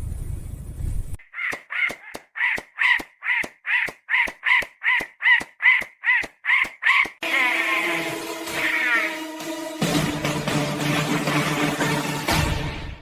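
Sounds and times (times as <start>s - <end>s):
harsh caw-like animal calls: 1.2s - 7.8s, 8.5s - 9.3s.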